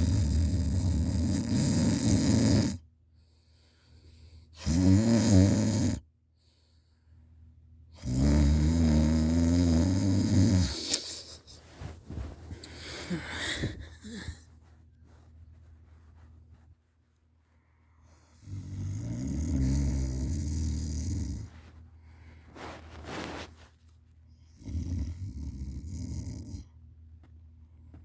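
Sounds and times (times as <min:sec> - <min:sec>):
person snoring: 0:00.0 - 0:02.8, 0:04.6 - 0:06.0, 0:08.0 - 0:11.0, 0:12.6 - 0:14.4, 0:18.4 - 0:21.5.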